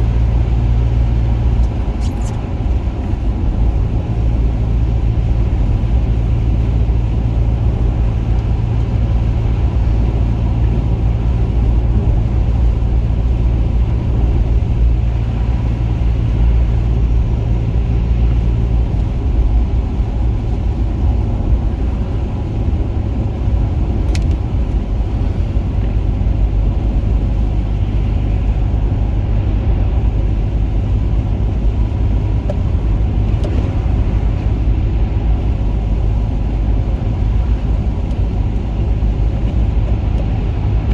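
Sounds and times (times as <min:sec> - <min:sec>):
car engine rumbling: 0:00.0 - 0:40.9.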